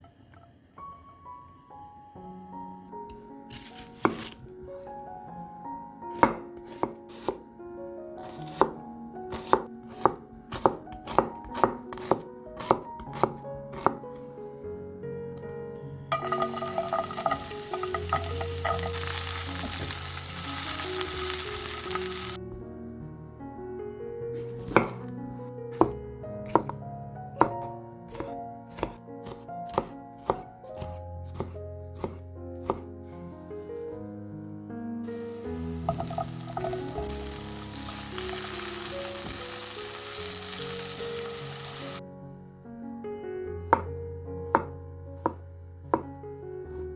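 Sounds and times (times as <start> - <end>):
soft background music: 0.0 - 46.9
knife chopping on cutting board: 3.5 - 4.4, 6.1 - 7.4, 8.2 - 14.1, 24.6 - 25.1, 25.7 - 26.8, 27.4 - 32.9, 38.2 - 39.5, 44.5 - 45.4.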